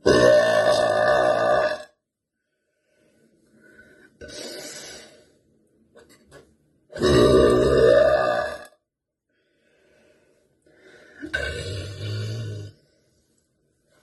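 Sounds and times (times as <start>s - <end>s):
woman burping loudly: 0.0s - 2.0s, 7.0s - 8.8s, 11.2s - 12.7s.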